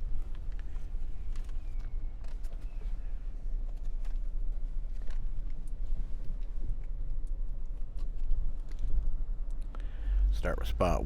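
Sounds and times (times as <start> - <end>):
vehicle road and engine rumble: 0.0 - 11.0.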